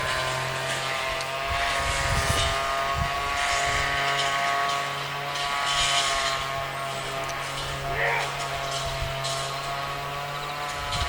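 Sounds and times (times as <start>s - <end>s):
steady mechanical hum: 0.0s - 11.0s
wind rumble on microphone: 1.3s - 4.1s, 8.8s - 10.0s, 10.6s - 11.0s.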